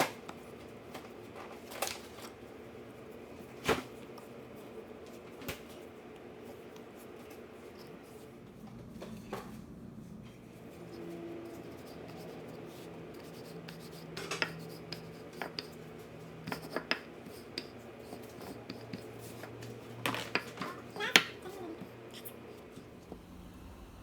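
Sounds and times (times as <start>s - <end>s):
faint low hum: 21.4s - 24.0s.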